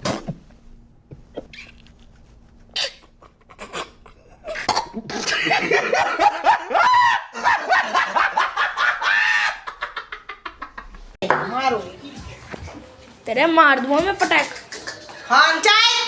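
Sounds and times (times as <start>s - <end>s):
high-pitched voices laughing and shrieking: 8.7s - 9.8s.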